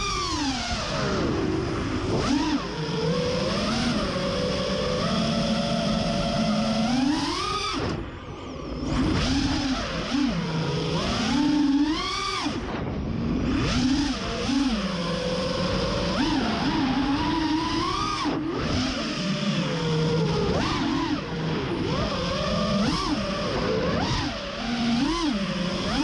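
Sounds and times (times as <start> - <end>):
quadcopter motors whining: 0.0 - 26.0.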